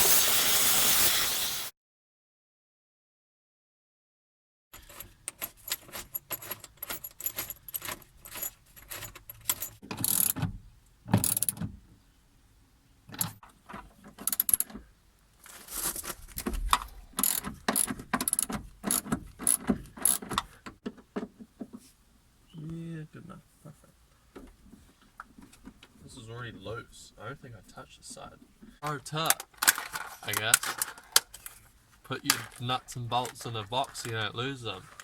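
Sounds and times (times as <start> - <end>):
hardware clattering: 4.8 - 10.5, 29.2 - 34.3
metallic clicking and rattling: 4.8 - 10.5, 13.1 - 14.8, 15.8 - 20.6, 29.2 - 34.2.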